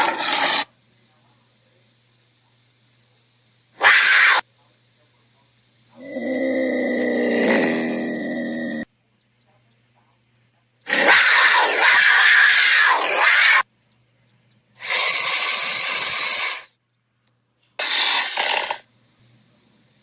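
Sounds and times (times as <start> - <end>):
tiger snarling: 0.0 - 0.7, 6.0 - 8.8, 10.9 - 13.6.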